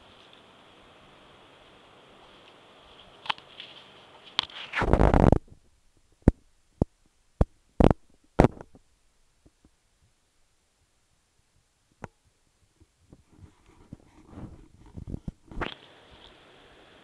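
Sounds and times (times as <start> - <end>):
short loud rustle: 2.9 - 5.6.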